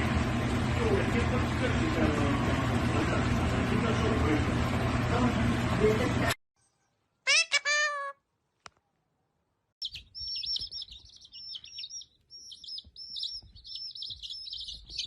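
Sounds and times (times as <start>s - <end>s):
small bird chirping rapidly: 9.8s - 15.0s.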